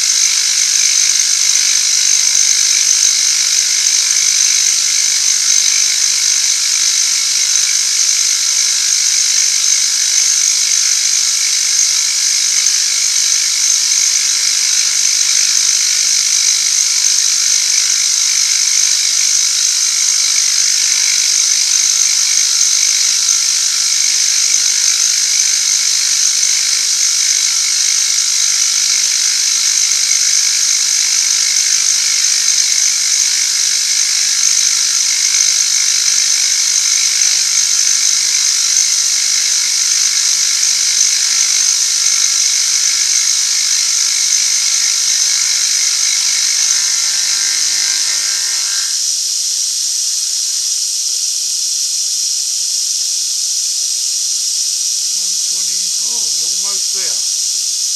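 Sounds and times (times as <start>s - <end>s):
machine tool cutting metal: 55.5s - 57.3s.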